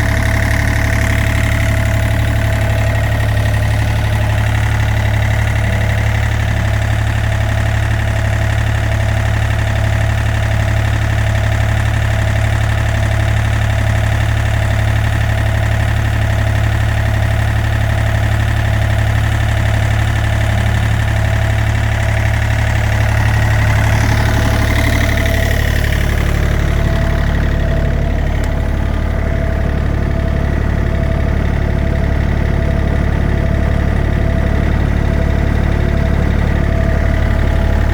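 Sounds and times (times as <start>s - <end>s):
diesel engine idling: 0.0s - 37.9s.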